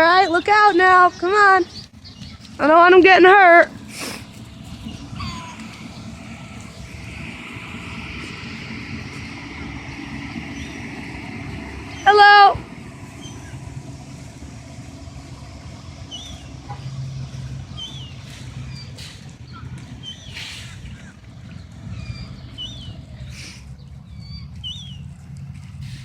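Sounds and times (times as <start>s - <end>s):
small birds chirping: 0.0s - 14.1s, 15.3s - 26.0s
steady low rumble: 0.0s - 26.0s
gull call: 4.8s - 6.1s.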